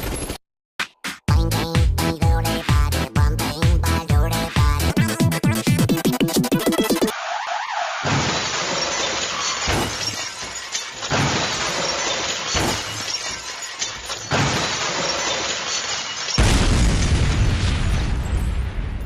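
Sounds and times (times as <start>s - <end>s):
electronic music: 1.3s - 7.2s
harsh crashing noise: 8.0s - 13.6s.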